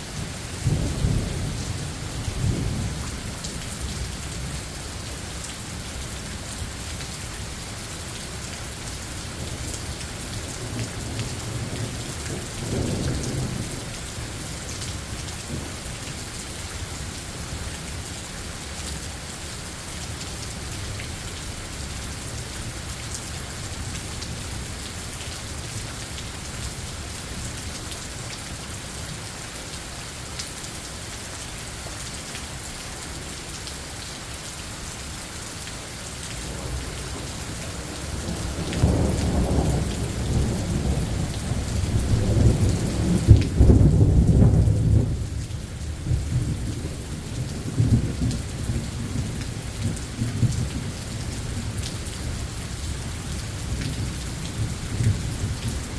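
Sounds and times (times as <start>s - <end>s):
steady rain falling: 0.0s - 55.9s
thunder rolling and cracking: 38.0s - 45.2s.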